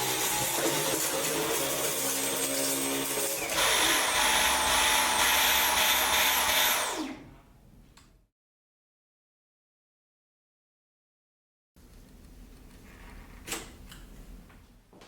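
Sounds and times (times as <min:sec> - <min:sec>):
vacuum cleaner pulsing: 0:00.0 - 0:07.2.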